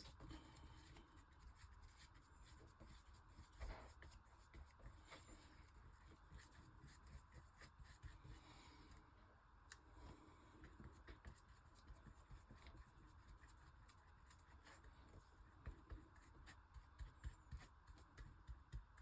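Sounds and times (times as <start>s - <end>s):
paintbrush strokes on paper: 0.0s - 9.0s, 10.0s - 19.0s.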